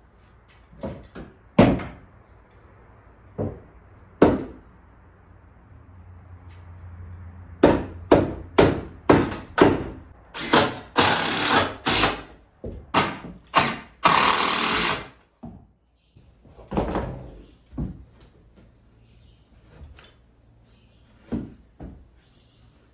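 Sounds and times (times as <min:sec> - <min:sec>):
hammering on wood: 0:00.8 - 0:02.0, 0:03.4 - 0:04.7, 0:07.6 - 0:15.7.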